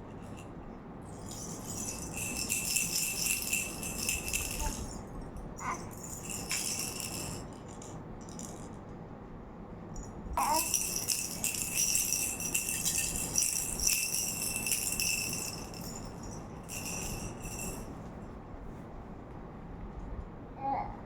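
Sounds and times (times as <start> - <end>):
baby rattle jingling: 0.1 - 8.8, 10.0 - 18.0.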